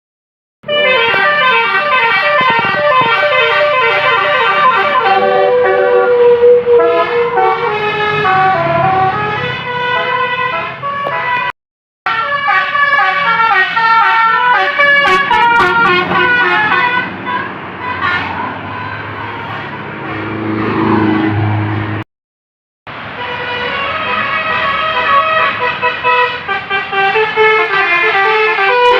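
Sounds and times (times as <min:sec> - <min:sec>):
multi-tone bus horn tune: 0:00.6 - 0:11.5, 0:12.1 - 0:22.0, 0:22.9 - 0:28.9.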